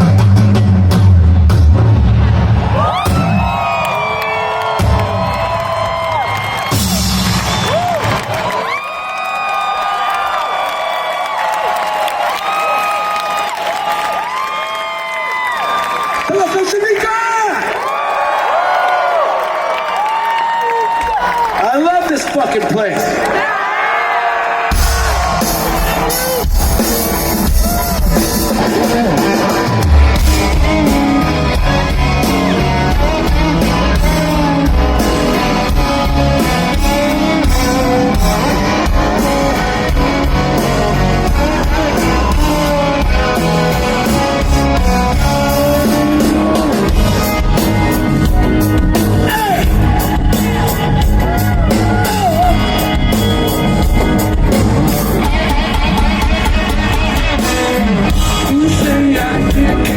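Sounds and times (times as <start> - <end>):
bass guitar: 0.0 - 3.8, 24.7 - 59.9
drums: 0.0 - 17.7, 24.3 - 59.9
electric guitars: 24.7 - 59.9
man singing: 57.4 - 59.9.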